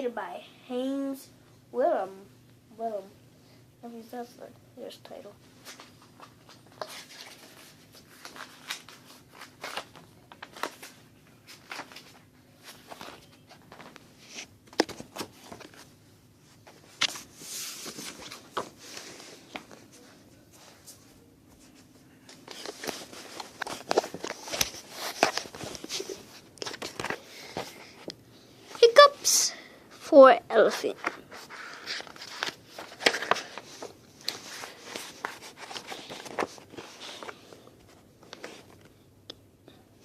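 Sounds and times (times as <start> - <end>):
book pages turning: 5.6 - 28.9, 30.8 - 39.0.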